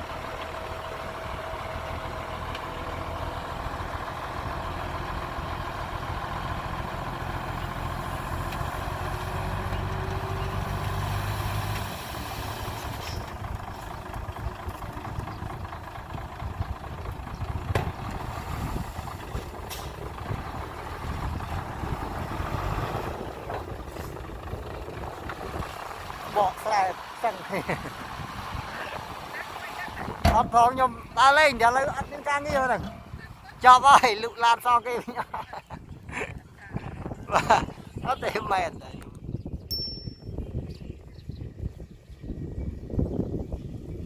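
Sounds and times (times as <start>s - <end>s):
heavy truck engine running: 0.0s - 33.9s.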